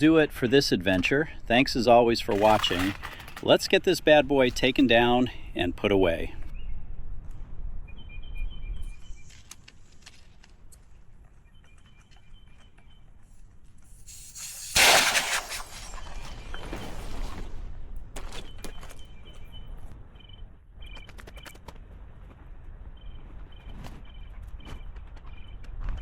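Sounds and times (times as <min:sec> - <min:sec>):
bird chirping: 0:07.9 - 0:09.4, 0:11.3 - 0:13.4
loud air rushing burst: 0:14.1 - 0:16.3.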